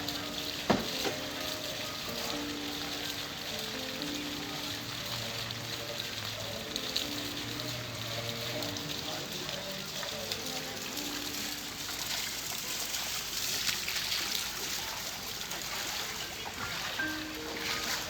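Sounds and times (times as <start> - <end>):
floodwater rushing in street: 0.0 - 18.0
faint tune: 17.0 - 18.0.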